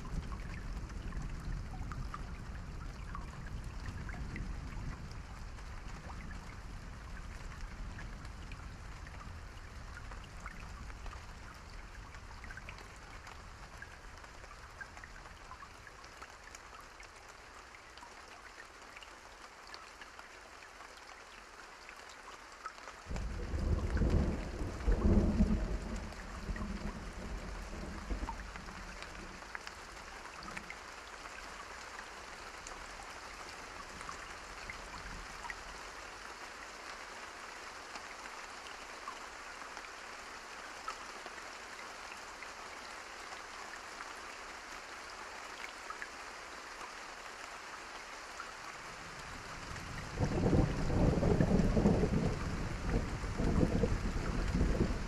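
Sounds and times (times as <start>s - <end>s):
steady rain falling: 0.0s - 55.0s
thunder rumbling: 23.1s - 29.4s, 49.8s - 55.0s.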